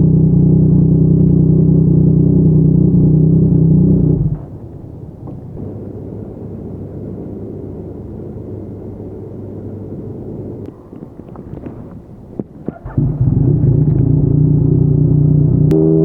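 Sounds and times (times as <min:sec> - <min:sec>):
motorcycle engine running: 0:00.0 - 0:09.6, 0:12.8 - 0:16.0.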